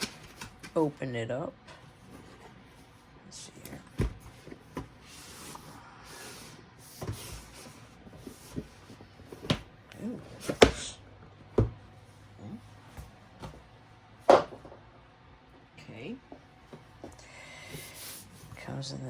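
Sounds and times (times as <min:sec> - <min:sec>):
cardboard rubbing and sliding: 0:04.1 - 0:09.7.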